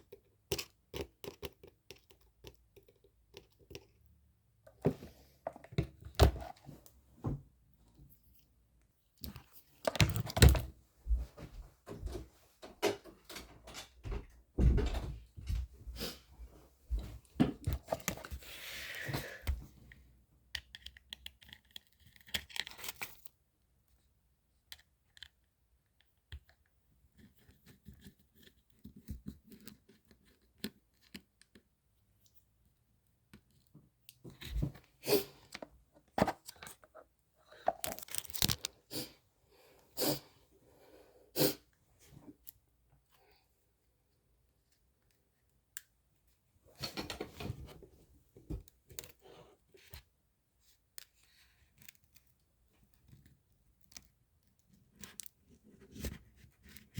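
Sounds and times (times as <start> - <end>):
small objects clicking and tapping: 0.1 - 4.0.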